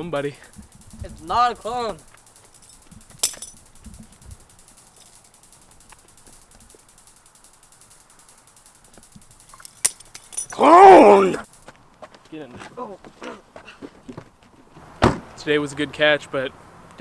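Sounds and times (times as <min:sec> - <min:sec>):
butterfly knife handles clicking: 0:01.1 - 0:11.4.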